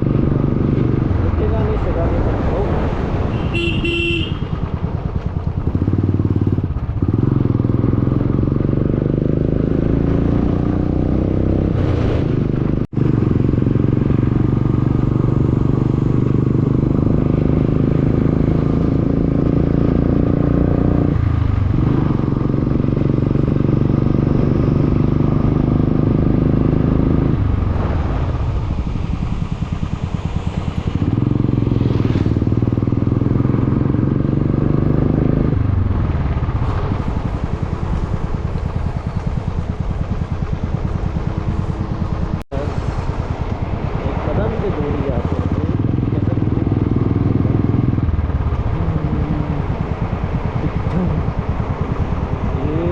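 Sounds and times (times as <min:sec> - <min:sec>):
motorcycle engine: 0:00.0 - 0:52.9.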